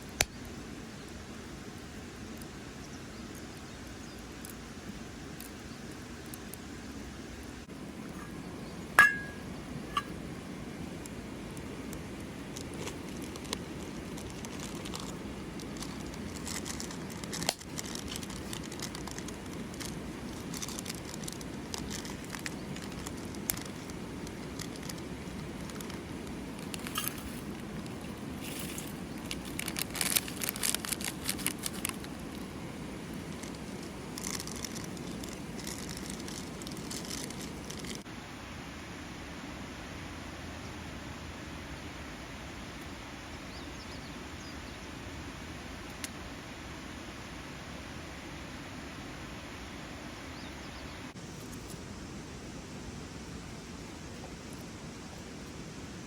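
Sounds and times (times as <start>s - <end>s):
campfire crackling and popping: 0.0s - 0.6s, 7.7s - 38.1s.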